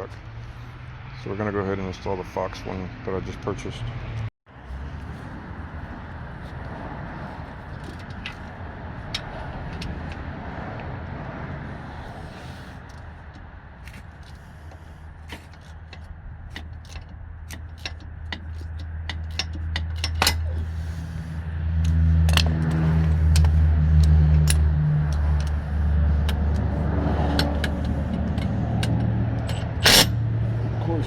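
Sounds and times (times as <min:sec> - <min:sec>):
low engine-like hum: 0:04.5 - 0:31.0
metallic clicks of hand tools: 0:15.5 - 0:20.5, 0:21.8 - 0:25.6, 0:26.2 - 0:30.2.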